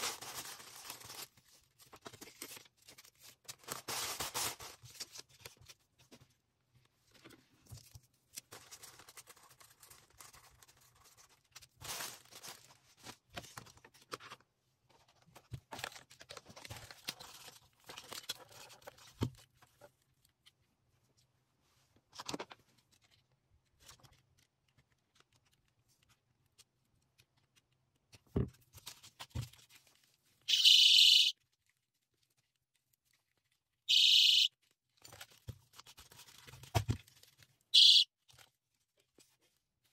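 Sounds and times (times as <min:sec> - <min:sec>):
packaging rustling: 0:00.0 - 0:05.9, 0:07.2 - 0:14.4
personal alarm shrieking: 0:30.5 - 0:31.3, 0:33.9 - 0:34.5, 0:37.8 - 0:38.1.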